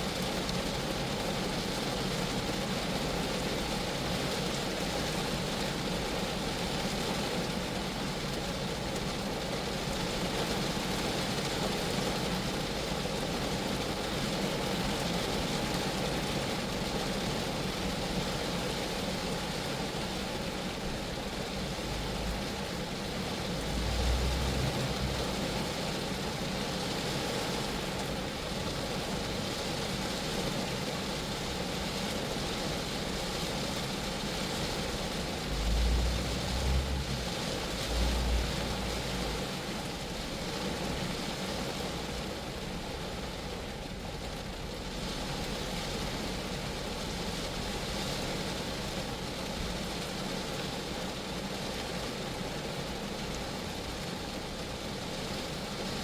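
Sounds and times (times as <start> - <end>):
rain on a car body: 0.0 - 56.0
low rumbles: 23.5 - 25.8, 34.9 - 40.2.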